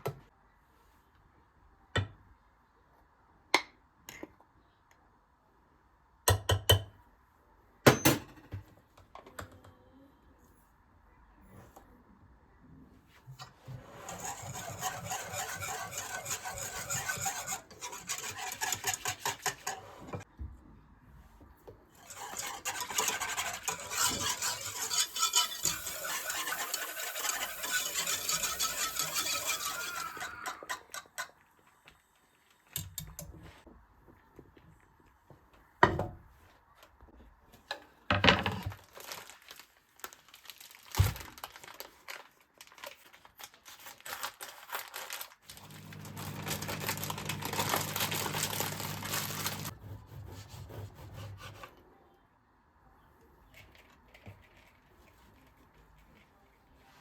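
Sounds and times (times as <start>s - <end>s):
scraping and rubbing food in bowl: 13.6s - 20.3s, 22.0s - 31.4s, 43.7s - 51.8s.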